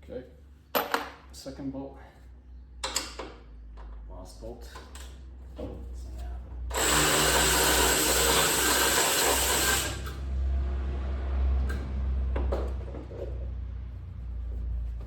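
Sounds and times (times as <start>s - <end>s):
power drill spinning off nut: 6.7s - 10.2s.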